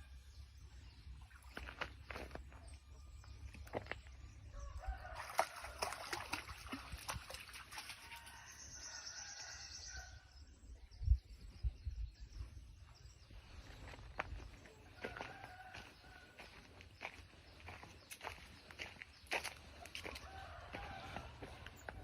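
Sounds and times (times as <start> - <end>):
songbirds calling: 0.0 - 22.0
chickens calling: 13.8 - 22.0.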